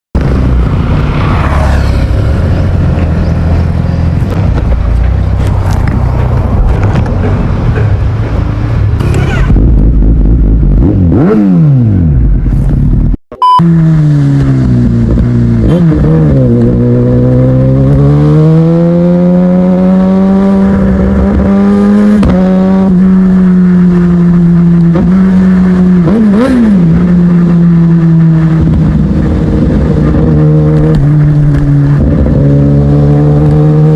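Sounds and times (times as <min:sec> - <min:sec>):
motorcycle engine revving: 0:00.2 - 0:33.9
throttle blips: 0:13.3 - 0:13.7.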